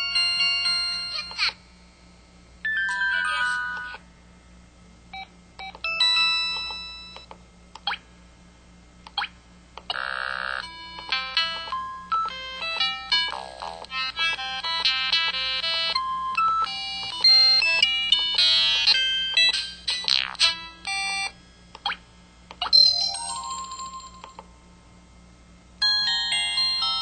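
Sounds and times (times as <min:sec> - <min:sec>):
phone chimes and beeps: 0:02.7 - 0:04.0.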